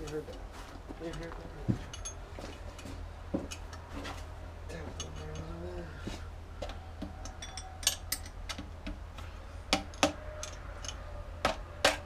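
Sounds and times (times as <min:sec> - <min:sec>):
tools clinking on metal engine parts: 0:01.0 - 0:04.0, 0:04.8 - 0:05.7, 0:06.7 - 0:09.0, 0:09.8 - 0:11.0.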